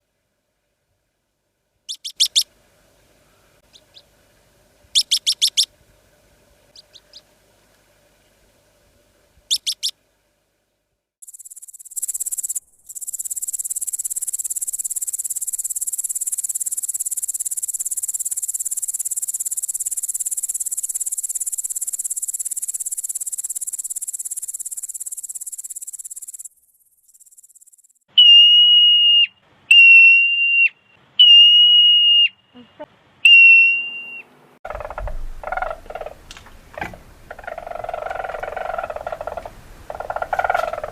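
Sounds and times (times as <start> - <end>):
clear whistle: 28.1 - 32.6, 33.2 - 34.3.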